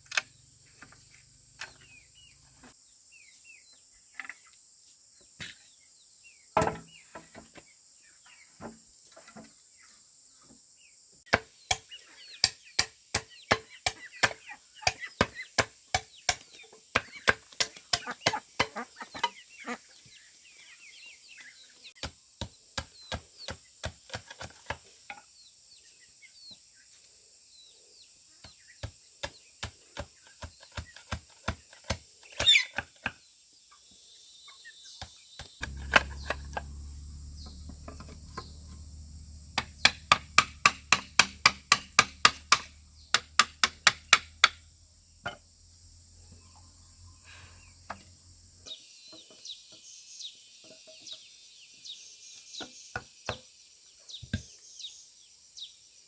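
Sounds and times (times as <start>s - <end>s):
sharp tool strikes: 11.3s - 16.4s, 17.0s - 18.8s, 35.4s - 44.6s
steady low hum: 35.6s - 48.6s.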